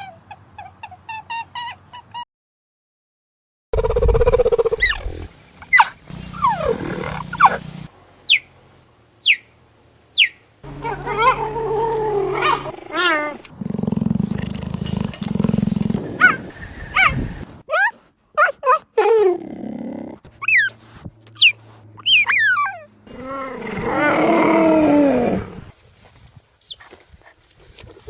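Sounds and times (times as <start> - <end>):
low wavering cheetah calls: 3.8 - 7.6, 21.4 - 25.2.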